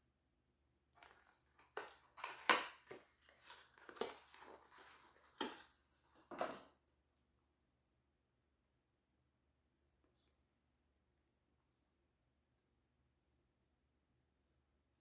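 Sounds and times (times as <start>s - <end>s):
bubble wrap crinkling: 1.0s - 5.8s.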